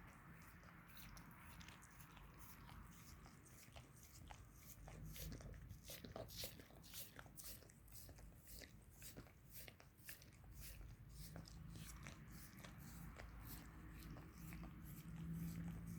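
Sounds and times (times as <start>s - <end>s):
dog licking wet smacks: 0.0s - 15.9s.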